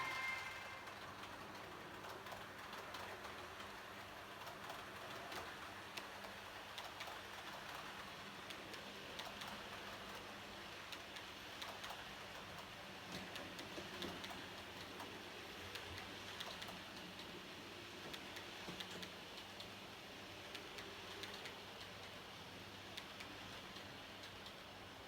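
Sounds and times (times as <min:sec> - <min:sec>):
model train hum: 0:00.0 - 0:12.6.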